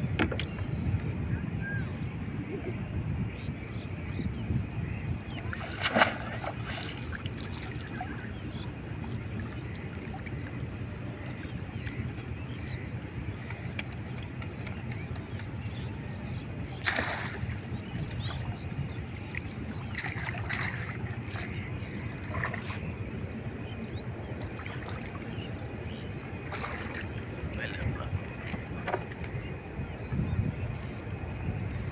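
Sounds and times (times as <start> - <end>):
river water splashing: 5.3 - 15.1, 16.7 - 29.2.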